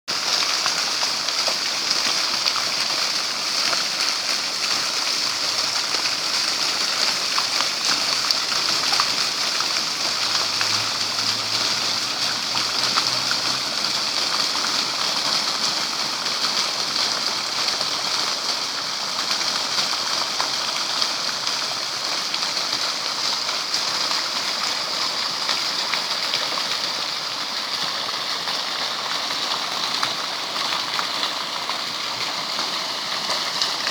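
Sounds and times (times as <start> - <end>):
running water splashing: 0.1 - 33.9.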